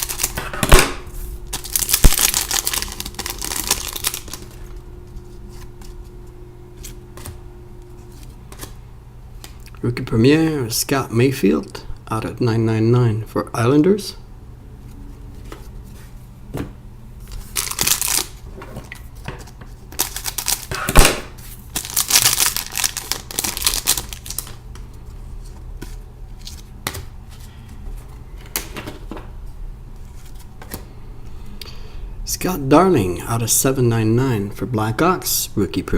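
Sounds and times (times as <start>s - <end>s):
trading cards rustling: 0.0s - 0.5s, 1.5s - 6.2s, 17.2s - 28.6s
steady low hum: 0.0s - 35.9s.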